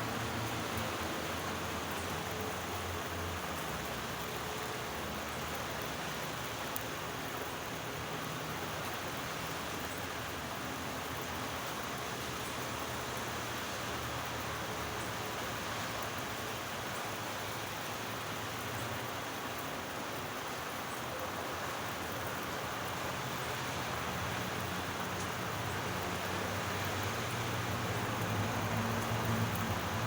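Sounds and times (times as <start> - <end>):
steady rain hissing: 0.0 - 30.0
raindrop ticks: 24.4 - 30.0.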